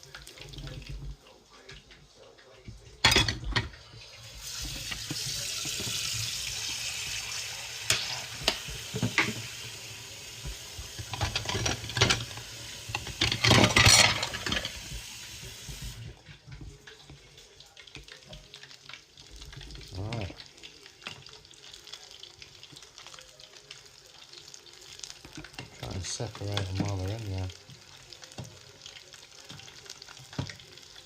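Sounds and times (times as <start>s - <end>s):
chicken sizzling in hot oil: 0.0s - 31.0s.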